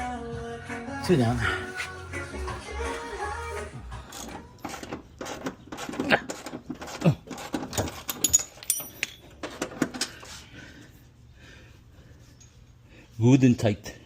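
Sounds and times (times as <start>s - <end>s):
wrench clicking and clanking: 4.1s - 10.1s.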